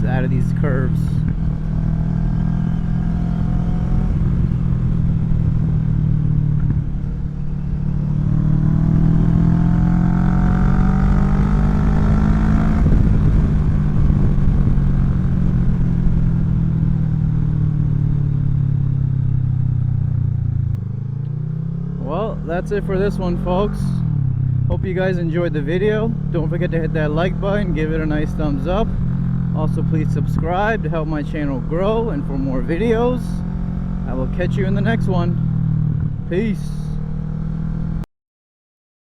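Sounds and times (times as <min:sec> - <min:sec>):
motorcycle engine running: 0:00.0 - 0:38.0.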